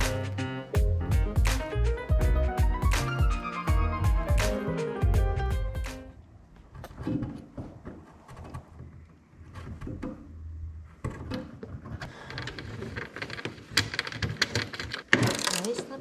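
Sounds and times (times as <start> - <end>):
rapid clicking and rasping: 12.0 - 15.7.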